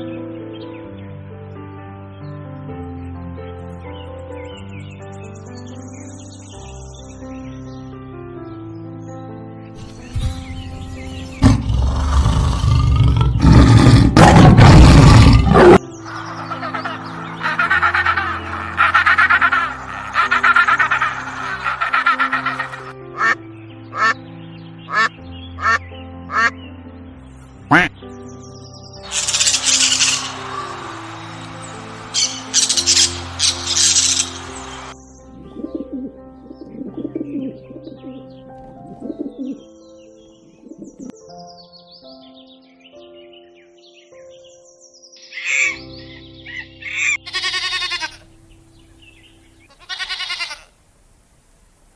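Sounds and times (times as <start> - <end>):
background music: 0.0 - 50.4
low warbling bird calls: 9.8 - 26.6, 29.0 - 41.2, 45.2 - 50.6
big cat roaring: 11.4 - 15.8
high bird chirps: 15.5 - 26.6, 27.7 - 35.2, 40.6 - 48.1
short pulsing calls: 29.0 - 31.1.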